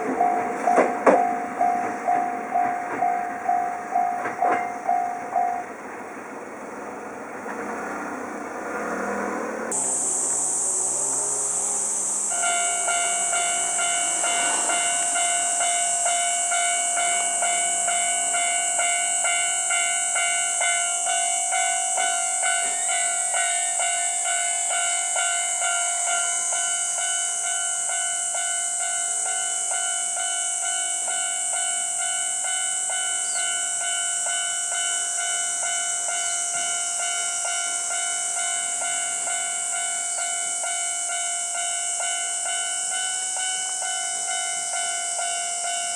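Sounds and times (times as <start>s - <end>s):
railroad crossing bell clanging: 0.0s - 45.9s
steady high hiss: 9.8s - 19.6s.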